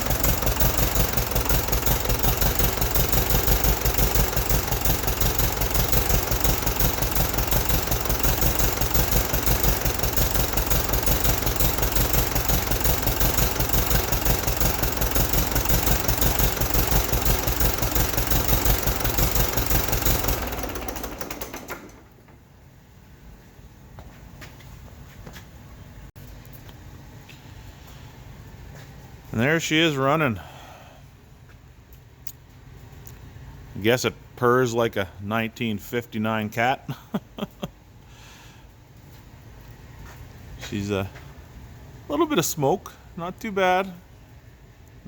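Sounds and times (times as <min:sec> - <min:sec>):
tractor diesel engine pulsing: 0:00.0 - 0:22.3.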